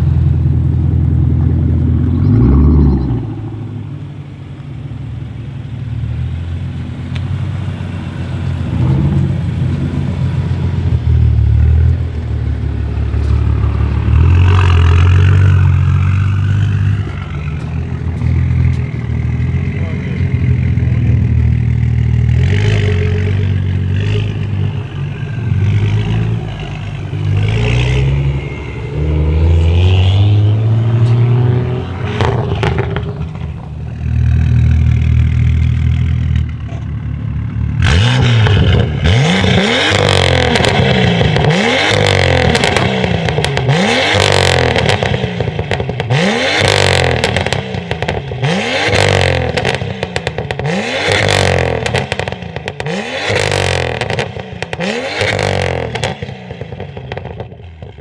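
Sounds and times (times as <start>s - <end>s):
car engine revving: 0.0s - 58.0s
exhaust crackles and pops: 32.0s - 37.2s, 37.8s - 58.0s.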